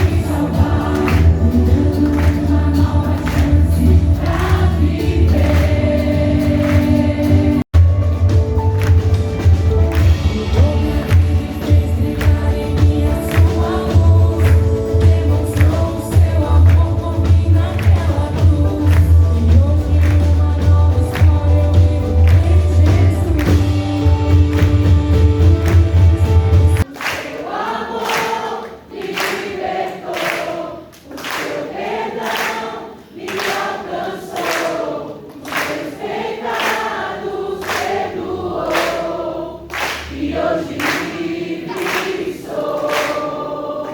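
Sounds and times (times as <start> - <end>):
band with heavy bass line: 0.0 - 26.8
group of singers: 0.0 - 43.9.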